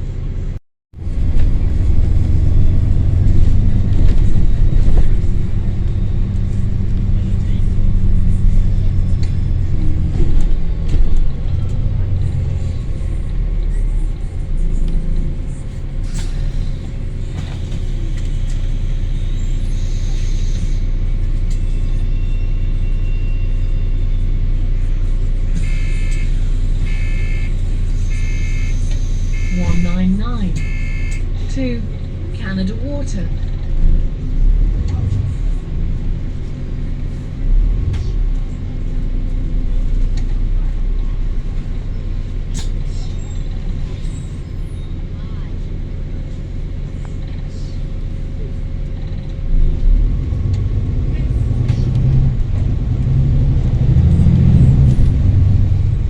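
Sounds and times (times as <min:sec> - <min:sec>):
bus diesel engine rumbling: 0:00.0 - 0:56.0
turbocharger high whine: 0:24.8 - 0:31.6.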